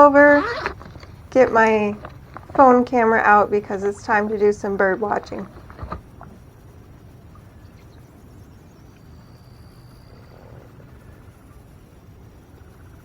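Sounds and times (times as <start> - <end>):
low steady rumble: 0.0 - 13.0.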